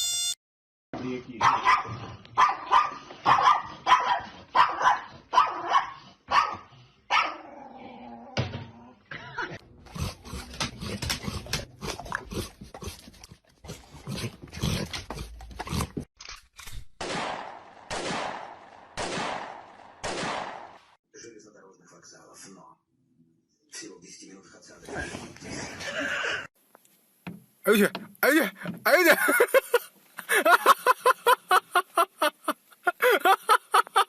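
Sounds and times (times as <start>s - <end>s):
dog barking: 1.4s - 7.5s.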